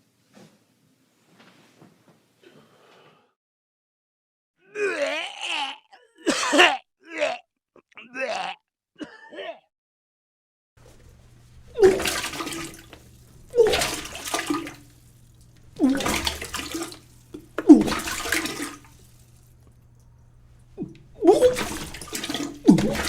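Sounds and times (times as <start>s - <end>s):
person retching: 4.8s - 9.7s, 19.6s - 23.0s
vomit splashing into toilet water: 10.8s - 23.0s.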